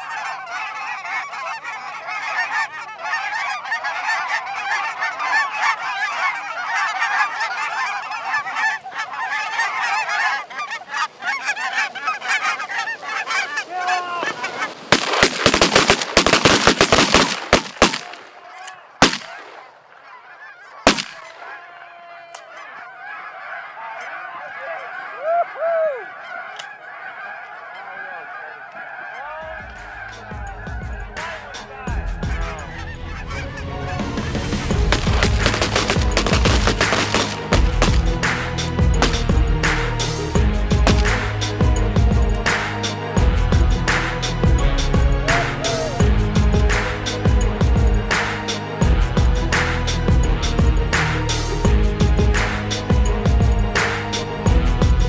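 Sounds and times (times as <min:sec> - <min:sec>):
geese calling: 0:00.0 - 0:55.0
shotgun fire: 0:14.9 - 0:18.4, 0:19.0 - 0:19.7, 0:20.9 - 0:21.5, 0:34.9 - 0:38.1.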